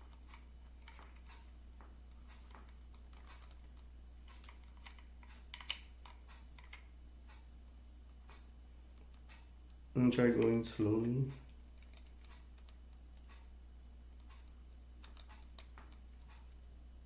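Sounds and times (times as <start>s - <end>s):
plastic toy parts clicking: 2.3s - 6.9s, 11.8s - 13.4s, 14.2s - 16.6s.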